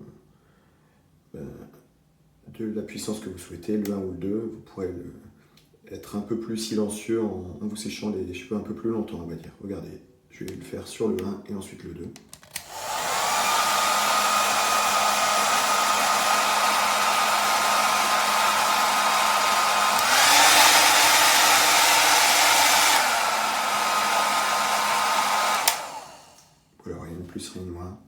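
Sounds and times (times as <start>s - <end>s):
hair dryer switch click: 12.4s - 26.5s
hair dryer blowing with a whine: 12.6s - 26.6s.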